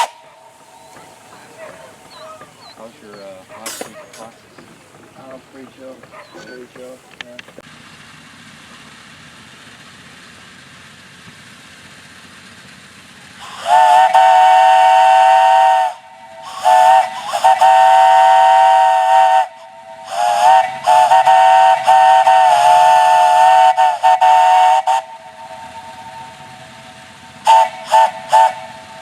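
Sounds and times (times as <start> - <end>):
three-chime steam whistle blasts: 0.0 - 1.3, 13.4 - 29.0.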